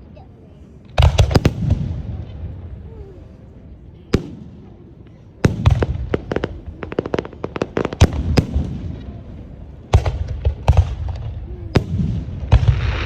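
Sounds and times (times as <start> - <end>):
firework cracks and pops: 5.4 - 9.2, 9.9 - 13.0.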